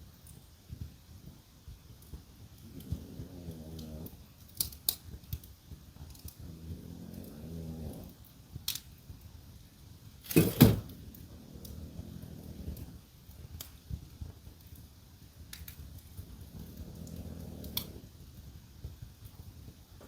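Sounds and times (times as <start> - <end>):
wood fire crackling and popping: 0.0 - 20.0
dog snoring: 2.6 - 4.4, 6.0 - 8.4, 10.4 - 13.1, 16.2 - 18.5.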